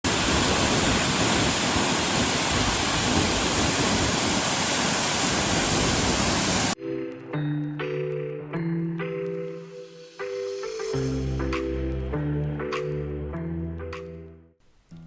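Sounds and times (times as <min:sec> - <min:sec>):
waterfall rushing: 0:00.0 - 0:06.8.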